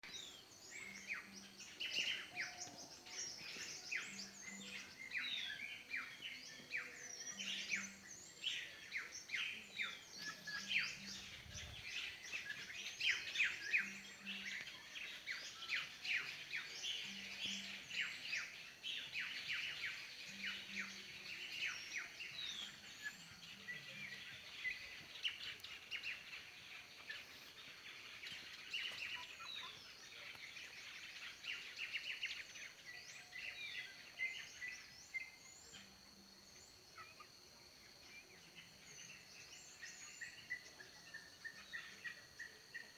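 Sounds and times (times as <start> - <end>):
birds chirping in chorus: 0.0 - 42.9.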